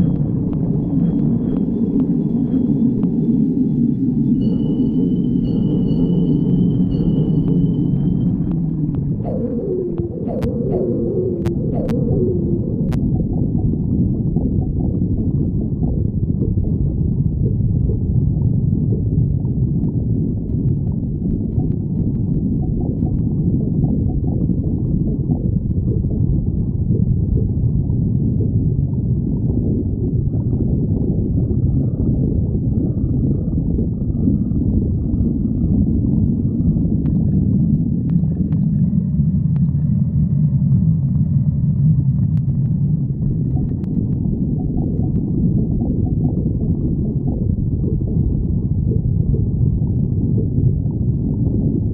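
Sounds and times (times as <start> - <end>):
stomach growling: 7.4 - 51.9.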